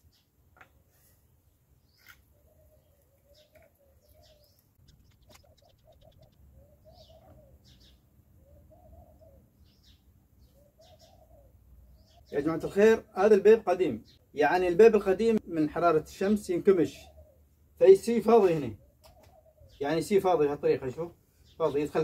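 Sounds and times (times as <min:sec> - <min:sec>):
high bird chirps: 0:01.8 - 0:12.5
dove cooing: 0:02.3 - 0:12.3, 0:16.9 - 0:17.5, 0:18.6 - 0:19.8.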